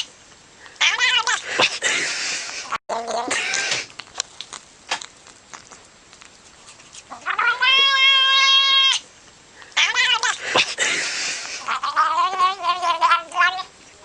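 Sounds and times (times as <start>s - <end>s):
cat yowling: 0.8s - 1.4s, 7.1s - 9.0s, 9.8s - 10.4s, 11.6s - 13.7s.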